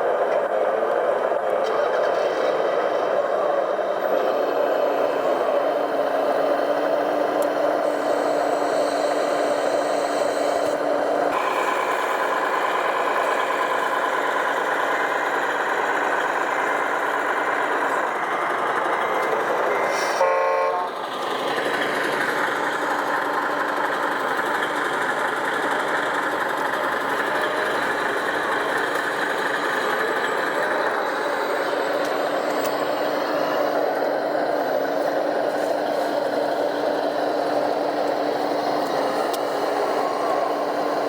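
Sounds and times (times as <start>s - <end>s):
rc truck engine drone: 0.0s - 41.0s
loud pitched toot: 19.8s - 20.9s.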